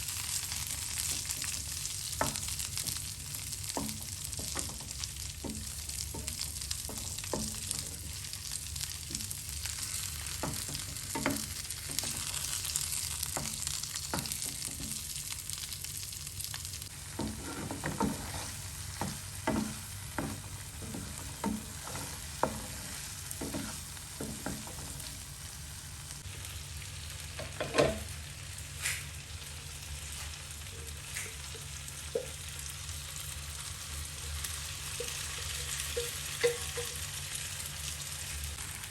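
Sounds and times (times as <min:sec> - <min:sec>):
food sizzling in frying pan: 0:00.0 - 0:38.9
utensil scraping against pan: 0:17.0 - 0:24.8.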